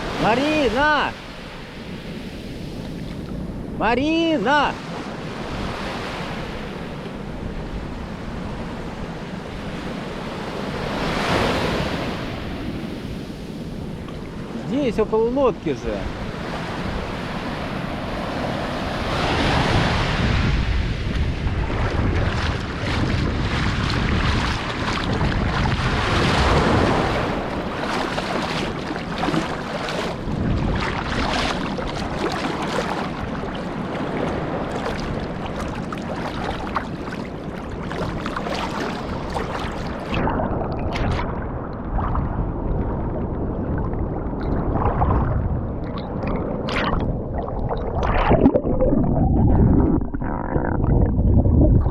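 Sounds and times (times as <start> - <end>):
sea waves washing: 0.0 - 51.9
wind buffeting microphone: 15.8 - 51.9.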